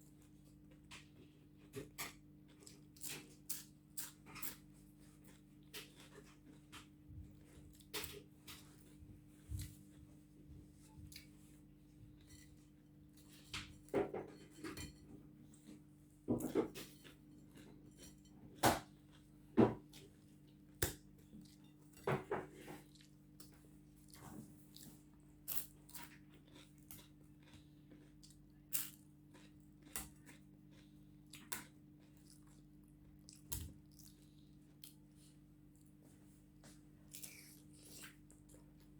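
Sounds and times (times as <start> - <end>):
person chewing crunchy food: 22.8 - 35.9, 37.0 - 38.9.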